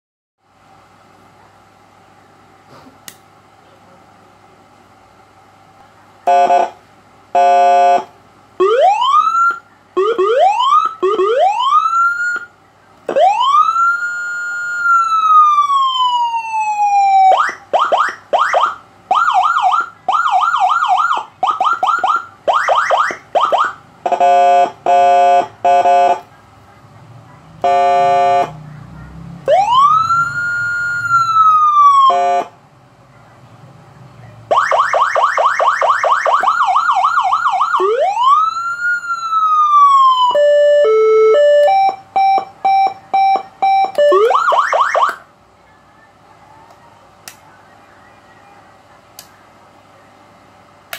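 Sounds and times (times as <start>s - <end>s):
electronic ambulance siren: 7.4s - 12.5s, 13.1s - 26.2s, 27.6s - 28.6s, 29.4s - 32.5s, 34.5s - 45.2s.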